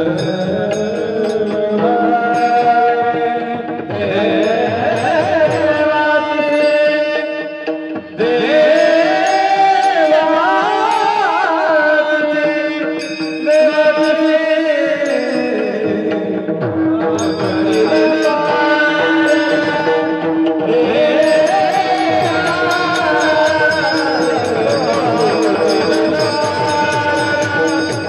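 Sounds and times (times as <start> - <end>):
held accompaniment: 0.0 - 28.0
wavering wordless singing: 0.0 - 28.0
drum strokes: 15.1 - 28.0
small hand cymbals clinking: 21.9 - 28.0.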